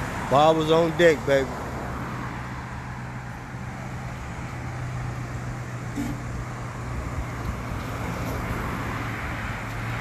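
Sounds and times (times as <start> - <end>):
low engine hum: 0.0 - 10.0
street traffic: 0.0 - 10.0.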